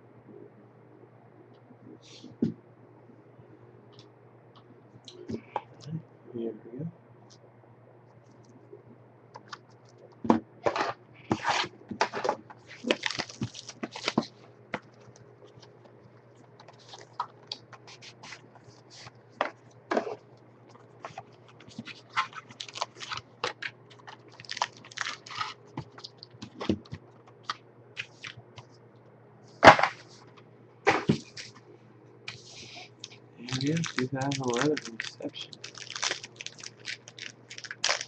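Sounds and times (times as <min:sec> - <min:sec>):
faint low hum: 0:00.0 - 0:38.0
card packs rustling and scraping: 0:10.6 - 0:14.9, 0:21.0 - 0:28.1, 0:33.4 - 0:38.0.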